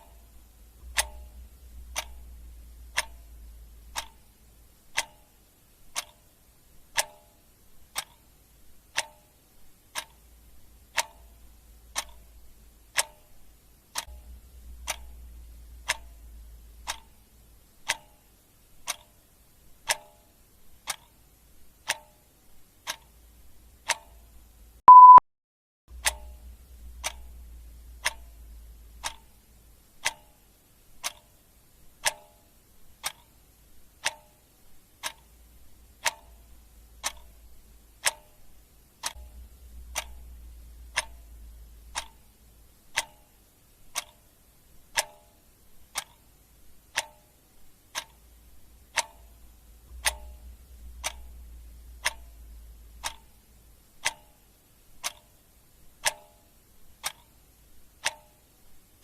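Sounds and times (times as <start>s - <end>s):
clock ticking: 0.0s - 25.2s, 25.9s - 59.0s
short high beep: 24.9s - 25.2s.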